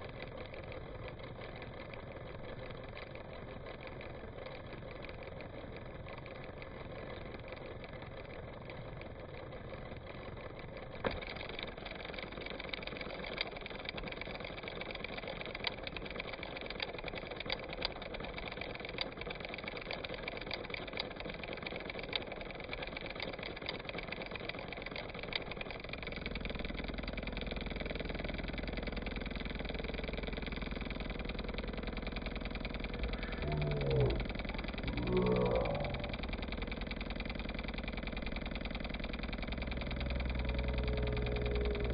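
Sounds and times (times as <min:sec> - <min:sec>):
engine idling: 0:00.0 - 0:41.9
click: 0:11.0 - 0:41.9
low rumble: 0:32.9 - 0:36.5.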